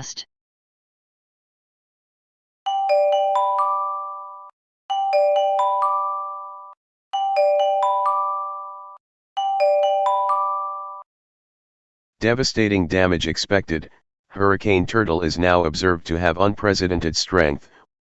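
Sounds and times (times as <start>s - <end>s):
bell-like rising chime: 2.7s - 11.1s.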